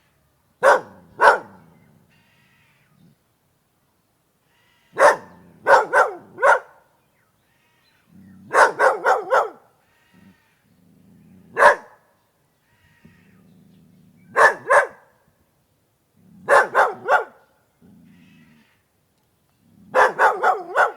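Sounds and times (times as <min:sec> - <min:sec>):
dog barking: 0:00.6 - 0:01.6, 0:05.0 - 0:06.9, 0:08.5 - 0:09.7, 0:11.5 - 0:12.0, 0:14.3 - 0:15.1, 0:16.5 - 0:17.4, 0:19.9 - 0:20.9.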